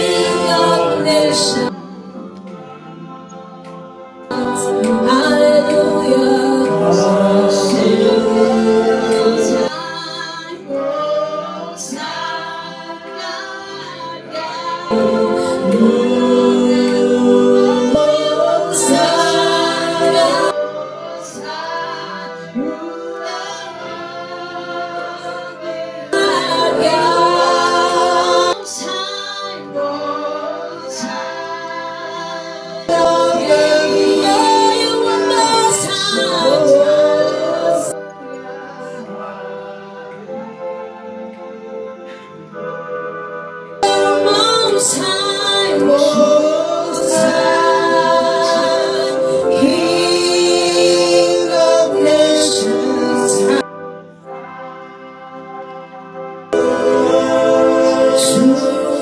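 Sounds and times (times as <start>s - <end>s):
group singing worship song: 0.0s - 59.0s.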